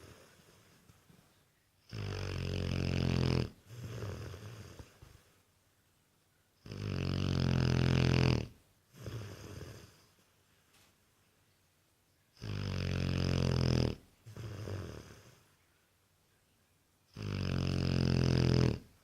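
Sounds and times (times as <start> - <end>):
dog snoring heavily: 1.9 - 5.2, 6.6 - 10.0, 12.4 - 15.4, 17.1 - 18.9.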